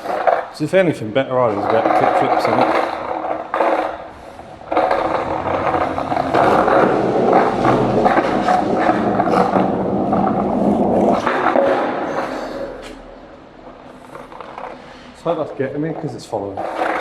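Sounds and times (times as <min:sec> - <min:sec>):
skateboard wheels rolling on pavement: 0:00.0 - 0:17.0
clicks from pavement: 0:01.5 - 0:13.1.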